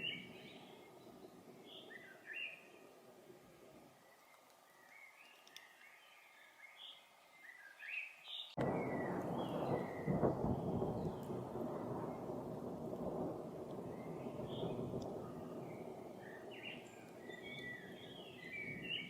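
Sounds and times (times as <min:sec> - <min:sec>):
thunder rumbling: 0:08.6 - 0:19.0
small bird chirping: 0:13.9 - 0:19.0.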